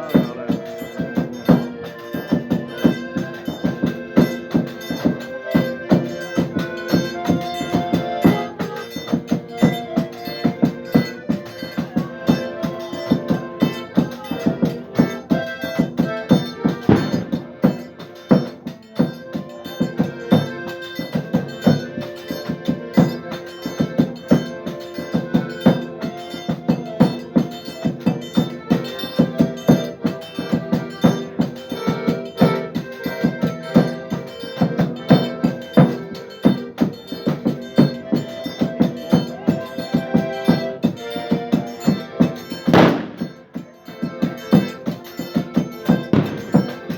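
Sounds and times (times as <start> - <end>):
accordion playing a tune: 0.0 - 46.9
steady drum beat: 0.0 - 46.9.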